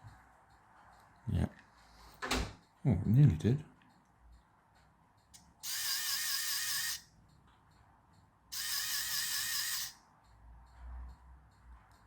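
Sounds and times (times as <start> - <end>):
toy car motor whirring: 5.6 - 7.1, 8.5 - 10.0.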